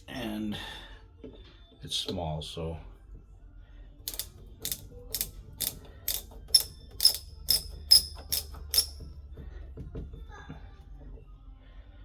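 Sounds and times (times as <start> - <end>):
ratcheting screwdriver clicking: 4.1 - 9.0.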